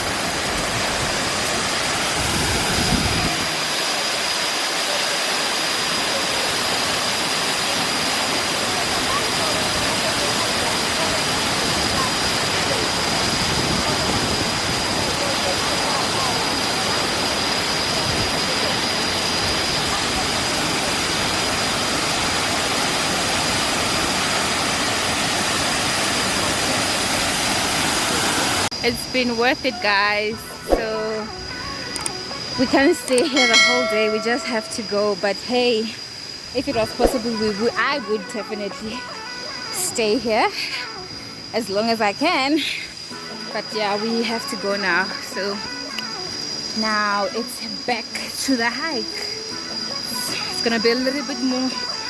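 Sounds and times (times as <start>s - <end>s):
waterfall roaring: 0.0s - 28.7s.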